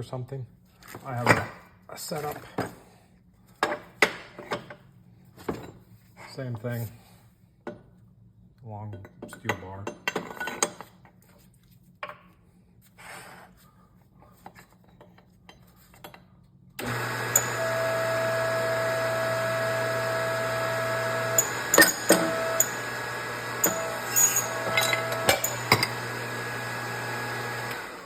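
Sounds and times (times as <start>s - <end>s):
press motor running: 16.8s - 28.0s.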